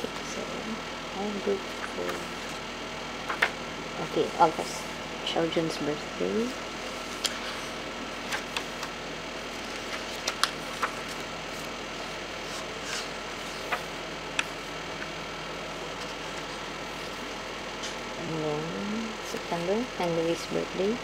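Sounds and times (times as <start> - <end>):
steady low hum: 0.0 - 21.0
pages turning: 7.0 - 14.7.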